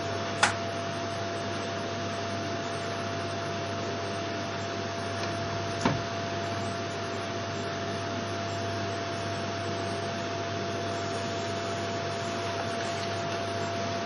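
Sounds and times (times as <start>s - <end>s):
vacuum cleaner running: 10.2s - 14.0s.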